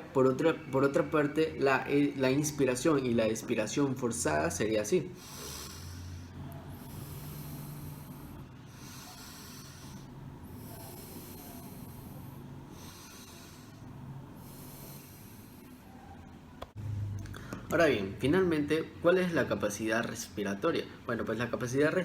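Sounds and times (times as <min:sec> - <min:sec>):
person breathing deeply: 0:05.1 - 0:15.9.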